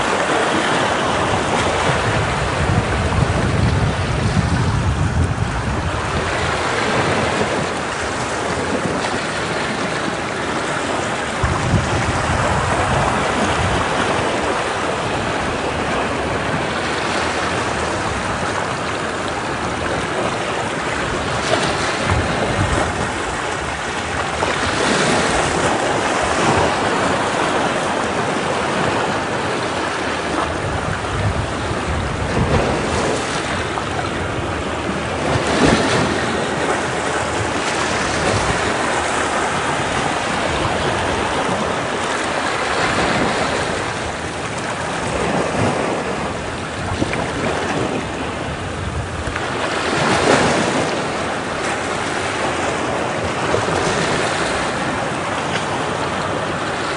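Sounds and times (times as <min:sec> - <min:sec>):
waves breaking against rocks: 0:00.0 - 0:56.9.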